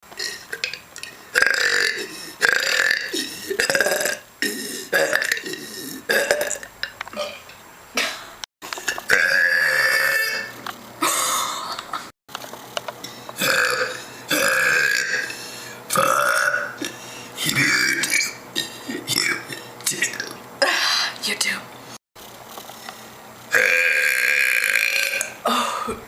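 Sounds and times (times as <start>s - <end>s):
woman burping loudly: 0.2s - 7.4s, 8.0s - 12.1s, 13.4s - 15.3s, 15.9s - 20.9s, 23.5s - 26.0s.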